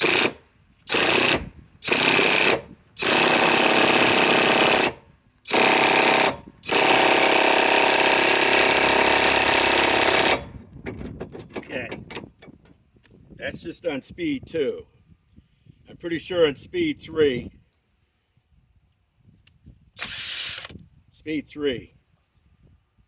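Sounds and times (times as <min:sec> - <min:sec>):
cordless impact wrench hammering: 0:00.0 - 0:12.8.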